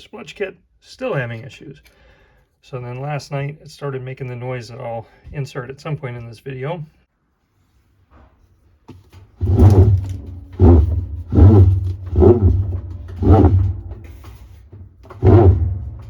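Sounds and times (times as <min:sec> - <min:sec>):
washing machine grinding: 0:09.4 - 0:16.0.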